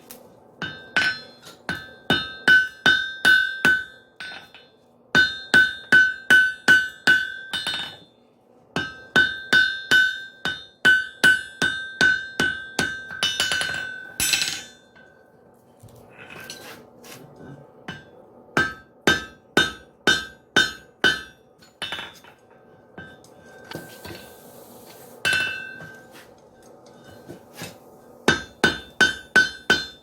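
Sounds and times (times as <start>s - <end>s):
hammer ringing on anvil: 0.6s - 8.1s, 8.8s - 15.2s, 17.9s - 22.3s, 25.3s - 26.0s, 28.3s - 30.0s.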